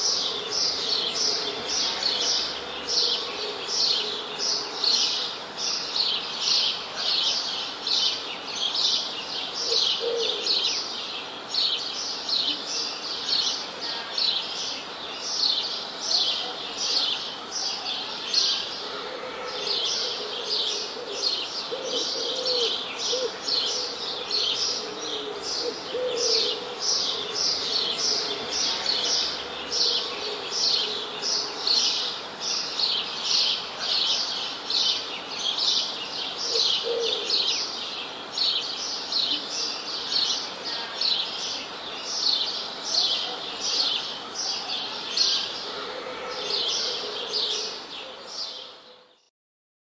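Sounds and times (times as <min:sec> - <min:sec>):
birds chirping: 0:19.4 - 0:43.2.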